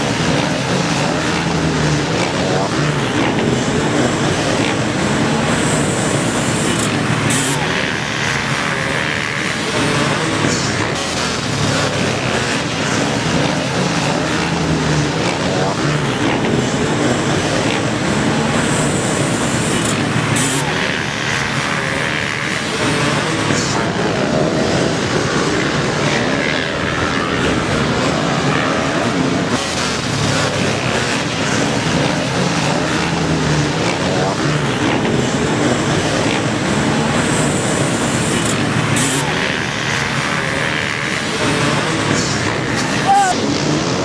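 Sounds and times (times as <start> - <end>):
rushing noise: 0.0 - 26.0
dirt bike engines running: 0.0 - 44.0.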